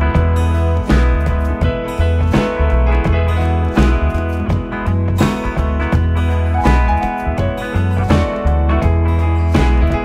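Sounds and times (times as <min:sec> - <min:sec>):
instrumental pop music: 0:00.0 - 0:10.0.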